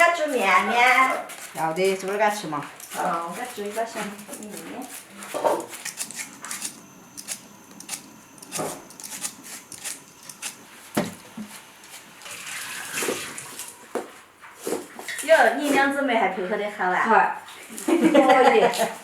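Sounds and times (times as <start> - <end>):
water running: 1.6 - 14.2.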